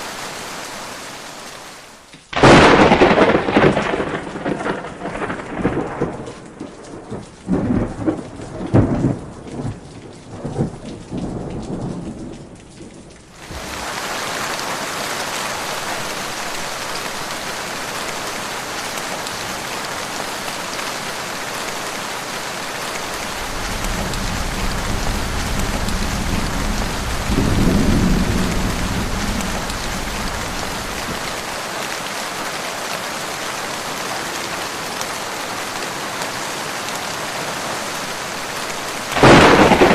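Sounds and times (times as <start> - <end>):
heavy rain hissing: 0.0 - 4.0, 13.3 - 39.9
rolling thunder: 2.4 - 13.9, 23.0 - 31.4, 39.1 - 39.9.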